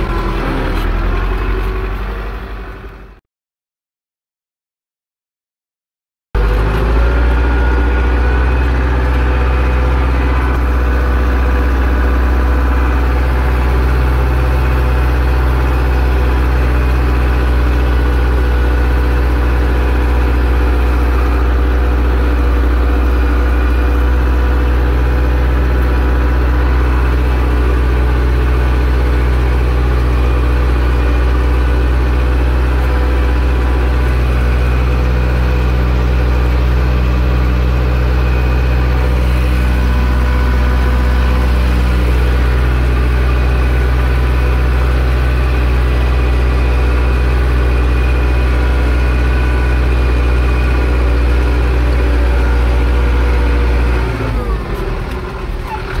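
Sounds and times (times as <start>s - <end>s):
tractor diesel engine running: 0.0s - 3.2s, 6.4s - 56.0s.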